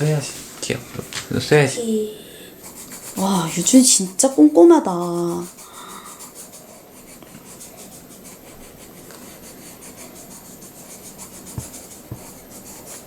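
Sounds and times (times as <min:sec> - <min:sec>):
colored pencil scratching on paper: 0:02.6 - 0:13.0
soft knock: 0:11.5 - 0:12.4.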